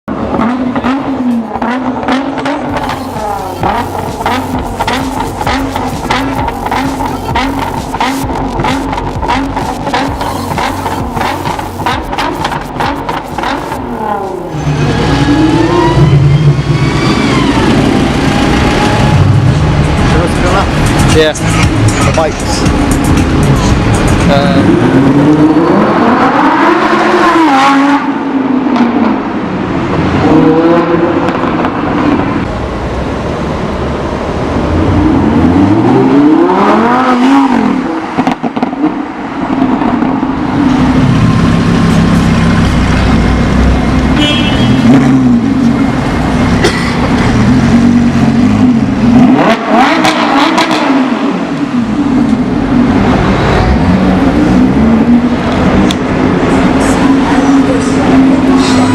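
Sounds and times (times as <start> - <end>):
car engine revving and accelerating: 0.1 - 58.9
exhaust pops and crackles: 2.4 - 14.5.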